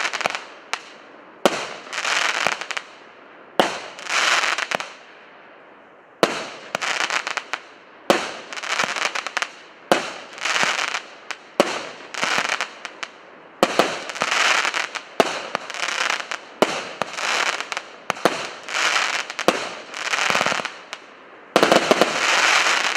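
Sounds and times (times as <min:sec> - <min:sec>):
firework bursts: 0:00.0 - 0:00.9, 0:06.2 - 0:22.9.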